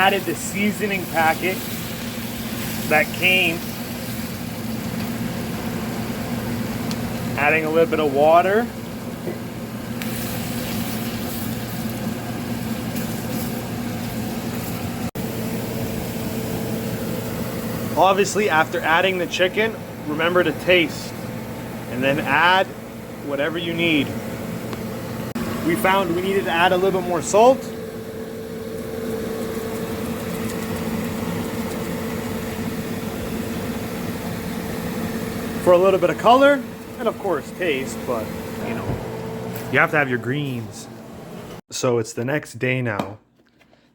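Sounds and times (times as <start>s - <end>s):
food sizzling in a pan: 0.0s - 7.3s, 9.8s - 17.8s
electrical hum: 0.0s - 41.6s.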